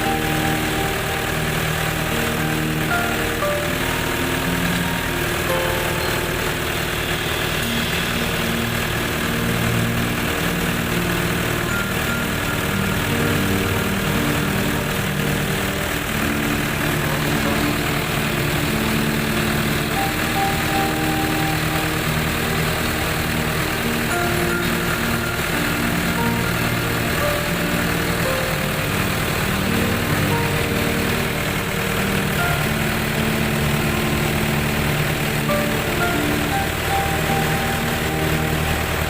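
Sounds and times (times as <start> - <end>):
diesel engine running: 0.0 - 39.0.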